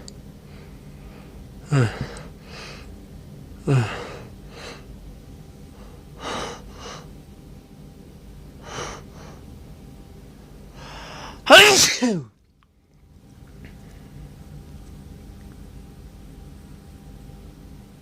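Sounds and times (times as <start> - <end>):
man gasping before sneeze: 10.8 - 12.3.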